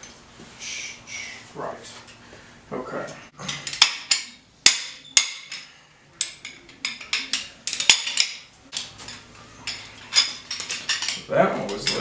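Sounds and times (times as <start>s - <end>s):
metal tools clinking on steel: 3.4s - 12.0s.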